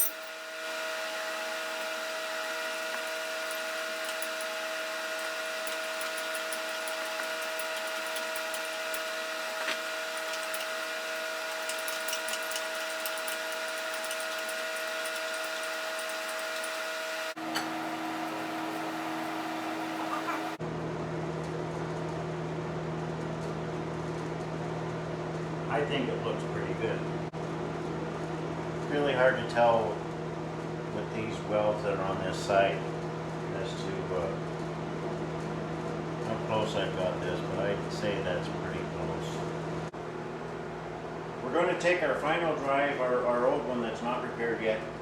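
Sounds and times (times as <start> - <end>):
small motor humming: 0.0 - 20.6.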